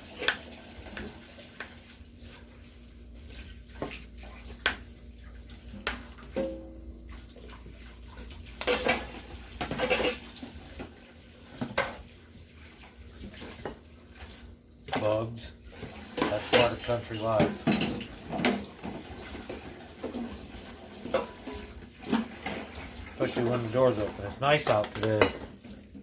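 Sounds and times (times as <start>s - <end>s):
dishes and utensils clinking: 6.3s - 6.9s, 8.6s - 10.4s, 16.1s - 20.2s, 21.0s - 25.6s.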